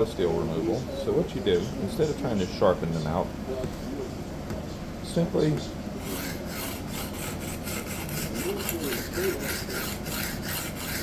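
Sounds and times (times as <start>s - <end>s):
knife scraping sharpening plate: 6.0s - 11.0s.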